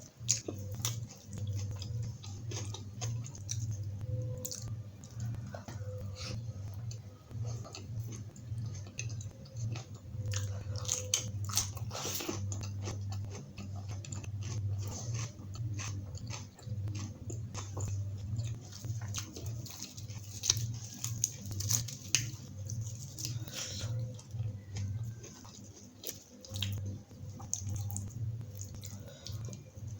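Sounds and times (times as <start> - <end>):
person chewing food: 0.0 - 29.9
wet mouth clicks and crunches: 26.1 - 29.6.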